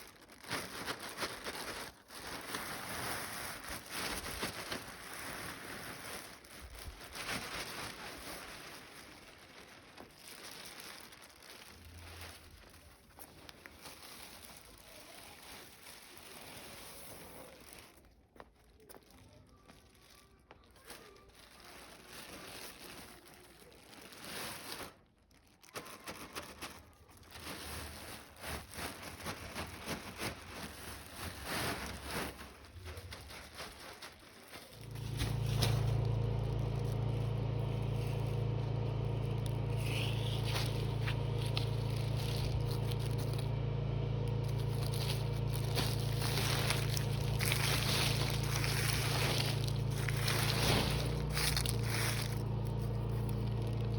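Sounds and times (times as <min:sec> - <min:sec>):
dry rustling and crackling: 0:00.0 - 0:53.9
electric motor humming: 0:34.8 - 0:53.9.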